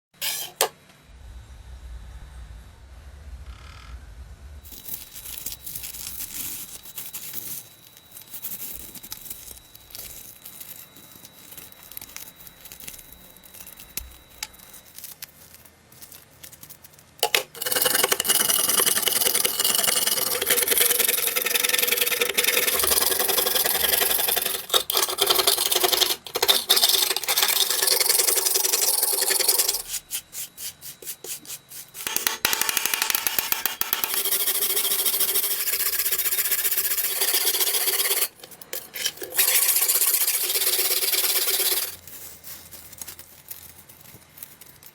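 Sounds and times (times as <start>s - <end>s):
knife scraping and rubbing by hand: 0.2s - 0.8s, 17.2s - 44.9s
power abrasive tool grinding metal: 17.3s - 29.9s, 34.1s - 42.0s.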